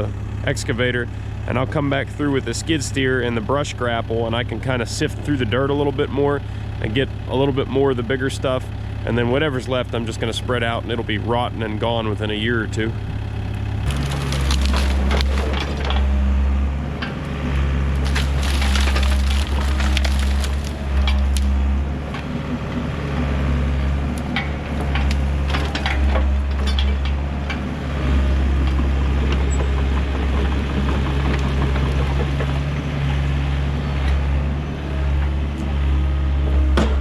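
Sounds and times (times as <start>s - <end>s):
excavator diesel engine running: 0.0s - 37.0s
branches cracking and snapping: 13.8s - 16.0s, 17.9s - 21.6s.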